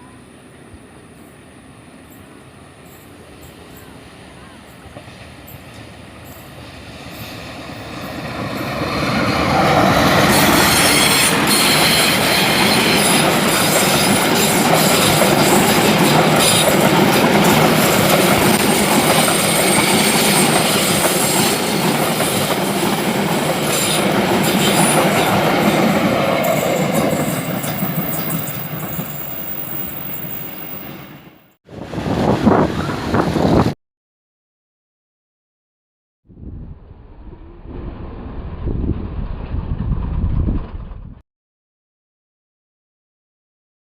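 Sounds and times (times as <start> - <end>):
passenger train passing: 0.0 - 33.8.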